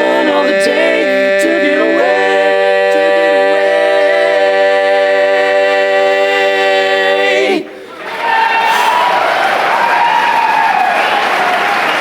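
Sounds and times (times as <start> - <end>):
barbershop quartet singing: 0.0 - 7.9.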